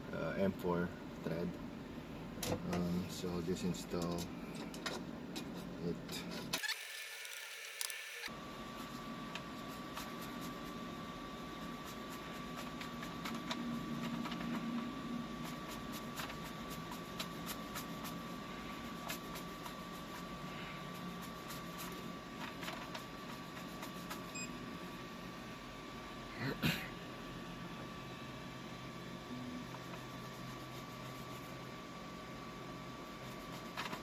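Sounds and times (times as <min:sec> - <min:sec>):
thin constant whine: 0:00.0 - 0:34.0
small parts clicking and tapping: 0:06.6 - 0:08.3.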